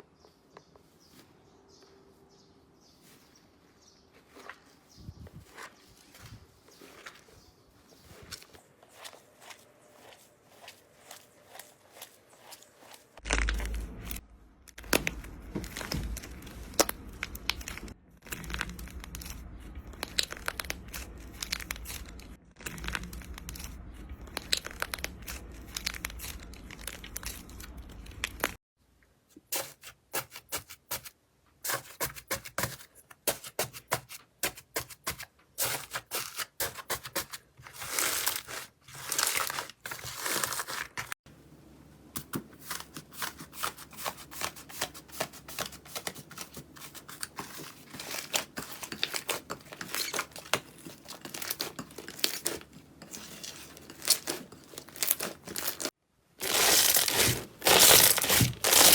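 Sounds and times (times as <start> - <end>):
slime crackling and crinkling: 5.4 - 28.6, 34.4 - 41.2, 42.6 - 58.9
slime crunching: 7.9 - 28.6, 33.3 - 41.1, 42.6 - 58.9
low hum: 13.2 - 28.6.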